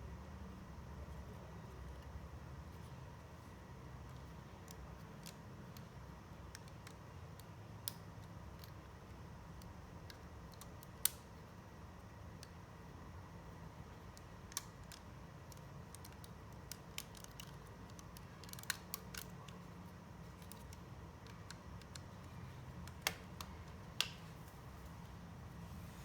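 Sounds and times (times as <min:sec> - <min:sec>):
steady low hum: 0:00.0 - 0:26.0
plastic parts clicking: 0:14.1 - 0:24.2.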